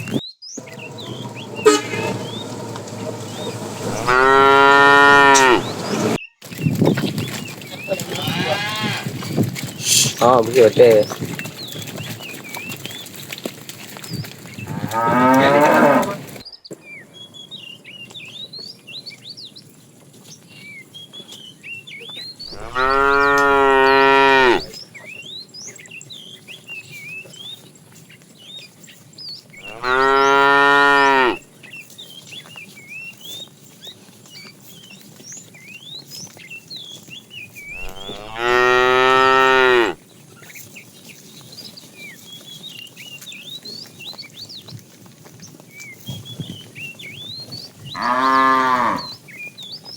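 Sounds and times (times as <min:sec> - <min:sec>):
cattle mooing: 0:00.7 - 0:06.2, 0:08.0 - 0:09.1, 0:14.7 - 0:16.4, 0:22.5 - 0:24.7, 0:29.6 - 0:31.4, 0:37.8 - 0:40.0, 0:48.0 - 0:49.2.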